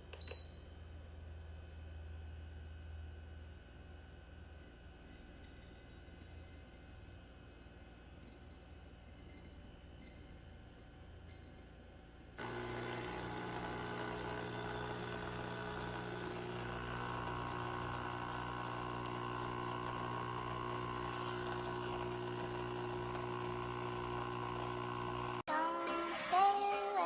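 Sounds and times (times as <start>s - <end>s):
espresso machine pump buzzing: 12.3s - 25.5s.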